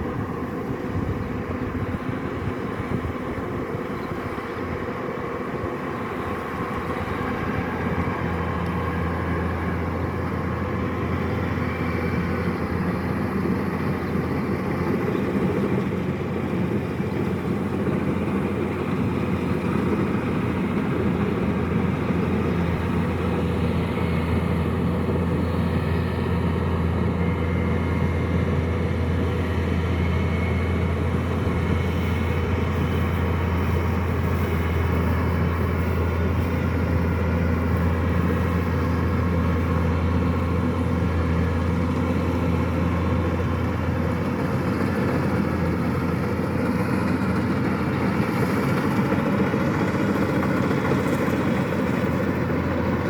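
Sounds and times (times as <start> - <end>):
combine harvester running: 0.0 - 53.0.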